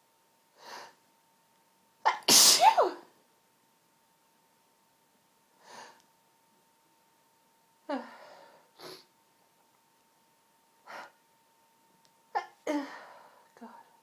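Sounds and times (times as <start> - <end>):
woman sniffling: 7.9 - 9.1.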